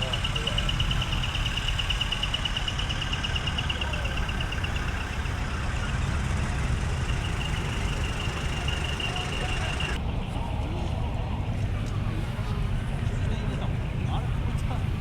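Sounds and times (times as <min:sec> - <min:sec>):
truck diesel engine idling: 0:00.0 - 0:10.0.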